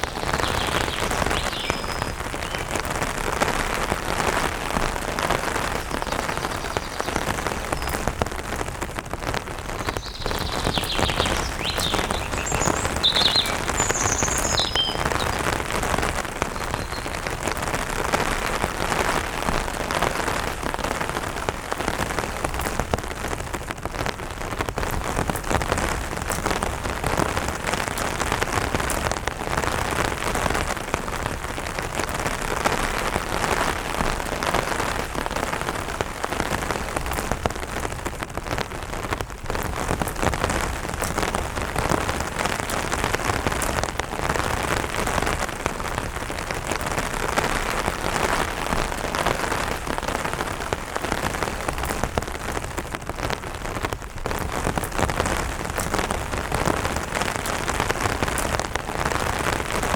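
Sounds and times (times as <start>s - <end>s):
rain on an umbrella: 0.0s - 59.9s.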